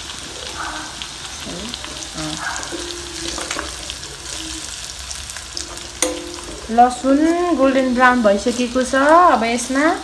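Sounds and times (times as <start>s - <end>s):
spices sizzling in hot oil: 0.0s - 10.0s
spoon clicking against pan: 2.6s - 4.7s, 5.6s - 7.3s.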